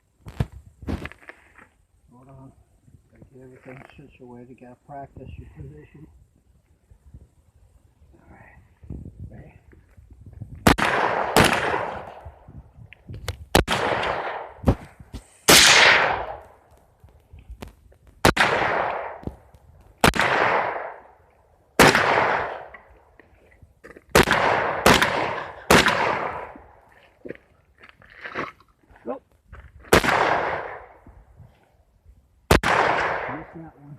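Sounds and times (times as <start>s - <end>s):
rifle shots echoing: 10.6s - 12.4s, 13.5s - 14.8s, 15.5s - 16.6s, 18.2s - 19.4s, 20.0s - 21.2s, 21.8s - 22.9s, 24.1s - 26.8s, 29.9s - 31.0s, 32.5s - 33.8s.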